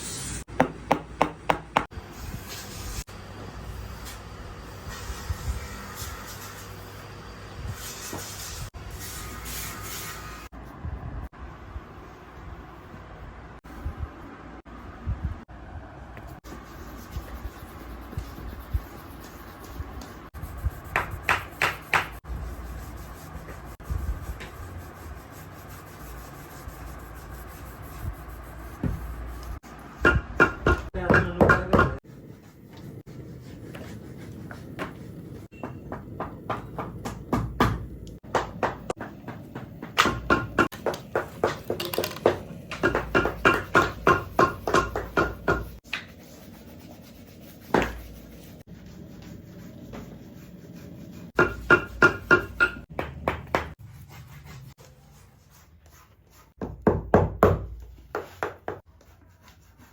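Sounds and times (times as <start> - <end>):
tool scraping over a shoe: 32.0 - 35.6.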